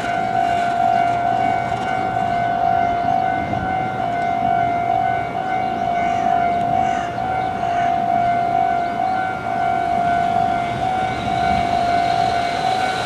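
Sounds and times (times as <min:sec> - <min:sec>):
heavy vehicle rumble: 0:00.0 - 0:04.6
level-crossing warning signal: 0:00.0 - 0:13.0.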